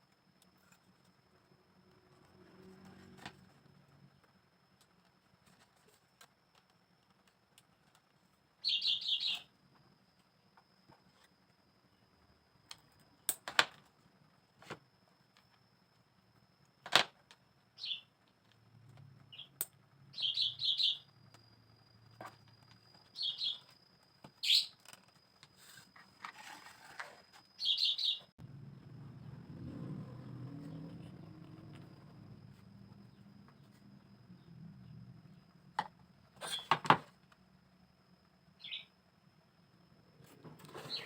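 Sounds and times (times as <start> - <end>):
small bird chirping: 8.6 - 9.6, 17.7 - 18.2, 19.2 - 24.8, 27.4 - 29.4, 38.5 - 39.0, 40.8 - 41.0
faint steady high tone: 19.4 - 29.4.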